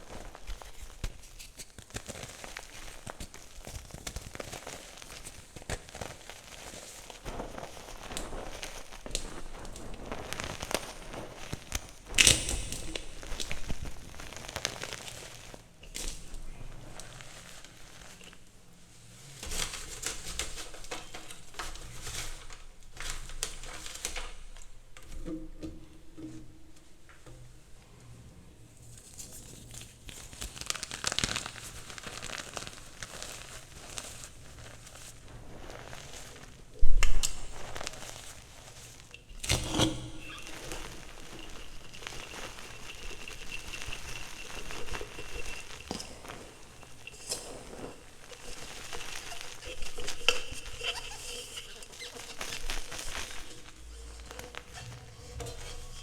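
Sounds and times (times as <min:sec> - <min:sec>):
chalk crunching and crackling: 0:00.0 - 0:24.6, 0:29.0 - 0:56.0.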